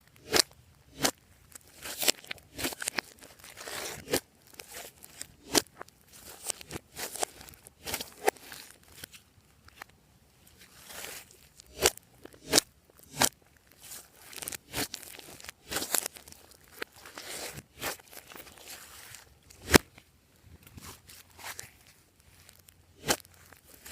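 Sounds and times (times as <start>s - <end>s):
slime crackling when stretched: 0.0s - 20.0s.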